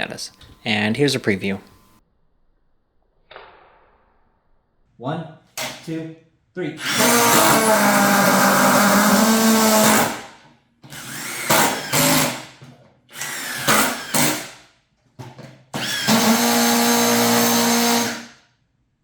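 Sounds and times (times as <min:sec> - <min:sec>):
impact drivers driving screws: 0:06.8 - 0:14.6, 0:15.7 - 0:18.4.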